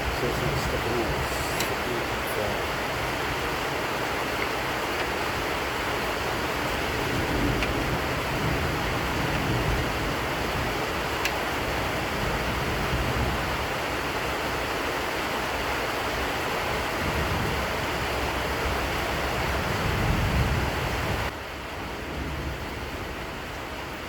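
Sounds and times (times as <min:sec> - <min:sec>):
steady rushing noise: 0:00.0 - 0:11.4.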